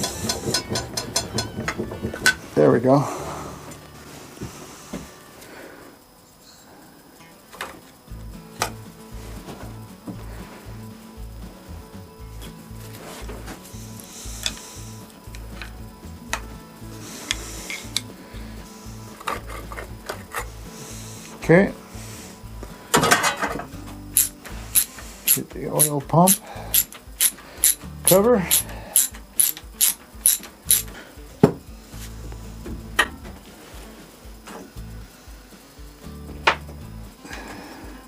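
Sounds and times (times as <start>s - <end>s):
music with bass beat: 0.0s - 2.6s, 8.1s - 19.2s, 23.6s - 38.0s
ratchet wrench clicking: 24.2s - 31.0s.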